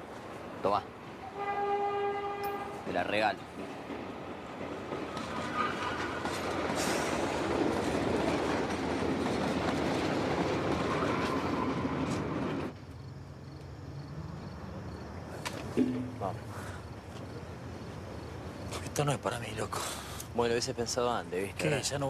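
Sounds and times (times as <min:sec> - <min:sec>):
train wheels rattling on tracks: 0:00.4 - 0:12.8.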